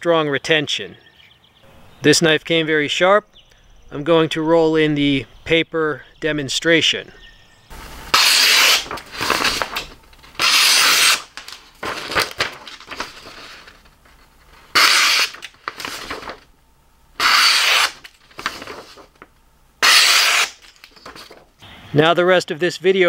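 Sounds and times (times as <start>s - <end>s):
knife slicing paper: 8.1s - 13.8s, 14.7s - 16.5s, 17.2s - 19.2s, 19.8s - 21.4s.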